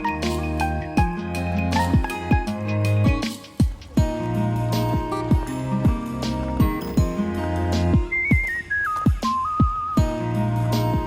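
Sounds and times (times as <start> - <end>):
deep drum beat: 0.0 - 11.0.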